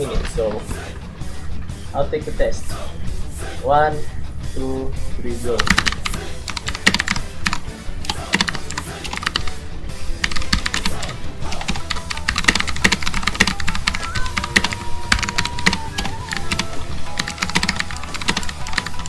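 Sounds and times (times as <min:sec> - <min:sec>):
typing on clicky mechanical keyboard: 0:05.6 - 0:09.5, 0:10.2 - 0:11.0, 0:11.6 - 0:19.0.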